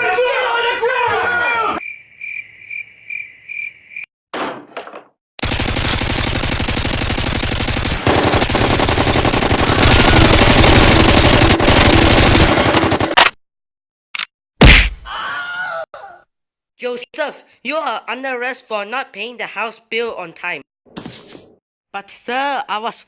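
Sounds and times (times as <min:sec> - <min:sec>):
automatic gunfire: 0:05.4 - 0:13.3.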